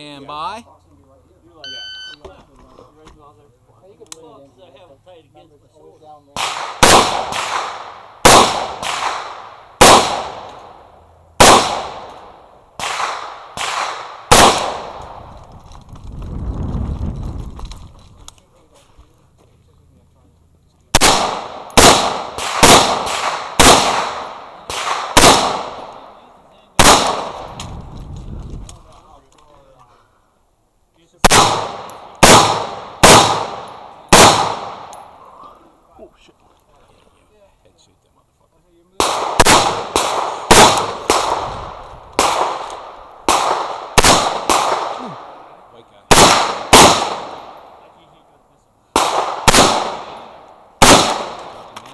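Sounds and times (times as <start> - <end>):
gunshots echoing: 6.4 - 15.3, 20.9 - 27.7, 31.2 - 35.3, 39.0 - 48.0, 48.9 - 51.9.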